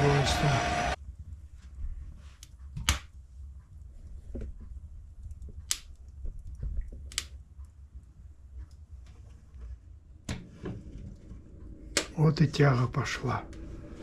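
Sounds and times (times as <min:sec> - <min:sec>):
low fire rumble: 0:00.0 - 0:14.0
logs crackling and popping in fire: 0:04.1 - 0:09.2.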